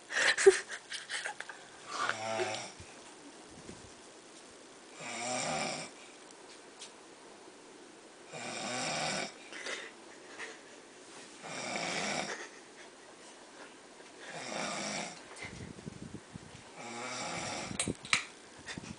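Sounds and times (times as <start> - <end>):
person snoring: 1.9 - 2.8, 5.0 - 6.0, 8.3 - 9.9, 11.4 - 12.4, 14.2 - 15.2, 16.8 - 17.8.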